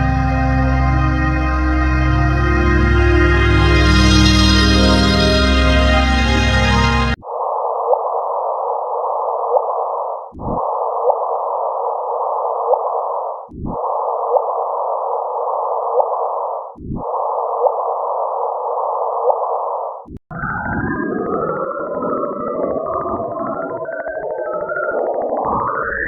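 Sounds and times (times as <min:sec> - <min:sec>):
rising electronic chirps: 0:00.0 - 0:07.2
dense electronic sound: 0:00.0 - 0:07.3.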